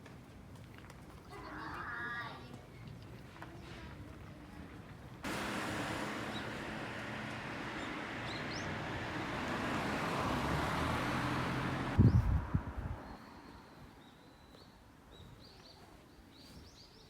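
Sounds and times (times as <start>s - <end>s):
vehicle rushing hiss: 5.2s - 13.0s
low engine hum: 5.2s - 13.1s.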